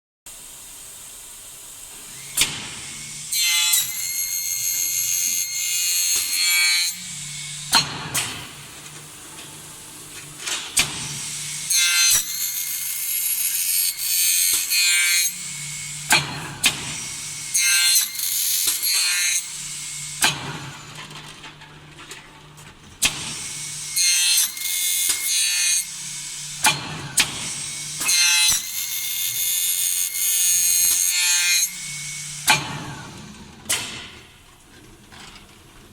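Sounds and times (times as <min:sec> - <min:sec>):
rasping saw-like cutting: 0:11.6 - 0:20.4.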